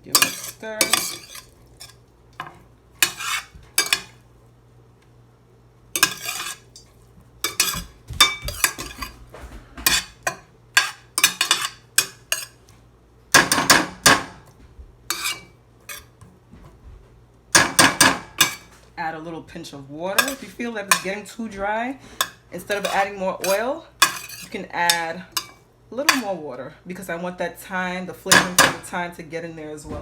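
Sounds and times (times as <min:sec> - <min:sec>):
utensil scraping in pan: 0:00.0 - 0:04.2, 0:06.0 - 0:12.7, 0:15.1 - 0:16.2, 0:17.6 - 0:18.9, 0:20.2 - 0:21.3, 0:22.0 - 0:26.4.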